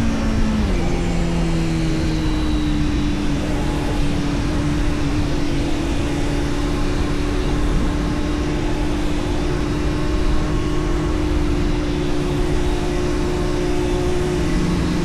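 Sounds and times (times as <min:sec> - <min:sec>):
motorcycle engine cruising: 0:00.0 - 0:15.0.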